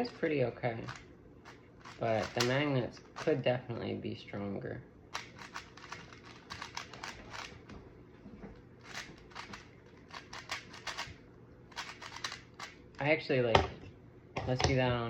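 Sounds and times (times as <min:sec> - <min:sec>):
plastic puzzle cube clicking: 0:01.8 - 0:02.6, 0:05.1 - 0:07.5, 0:08.8 - 0:11.1, 0:11.7 - 0:12.8.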